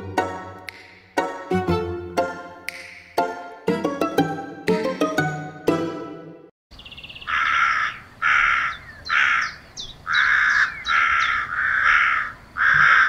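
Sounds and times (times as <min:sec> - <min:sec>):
plucked-string tune: 0:00.0 - 0:06.4
crows cawing: 0:07.3 - 0:13.0.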